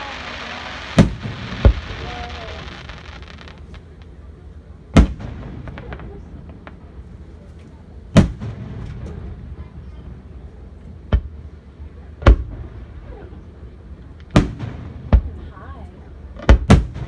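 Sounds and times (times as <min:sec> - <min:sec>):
firework shells booming: 0:00.0 - 0:04.2, 0:04.9 - 0:07.2, 0:08.1 - 0:09.6, 0:12.2 - 0:13.0, 0:14.3 - 0:15.4, 0:16.4 - 0:17.0
light crackling: 0:00.0 - 0:04.6.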